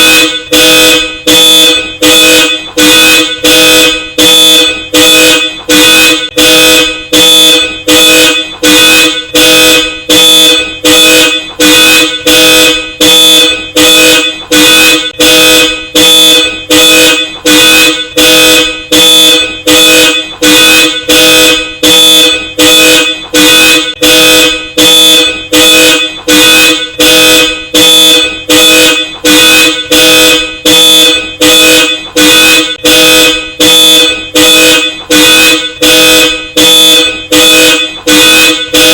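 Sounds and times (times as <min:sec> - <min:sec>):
dual-tone car horn honking: 0:00.0 - 0:38.9.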